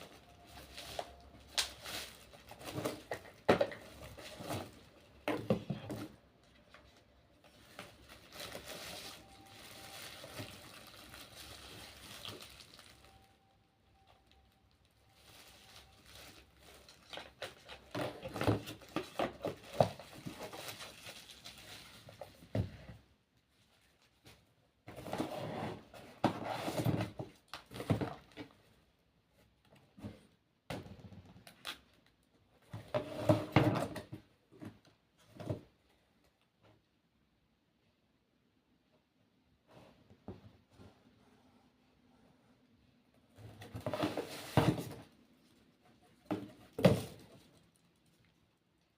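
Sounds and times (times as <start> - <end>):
packaging rustling and crinkling: 0.0 - 22.7, 43.6 - 48.6.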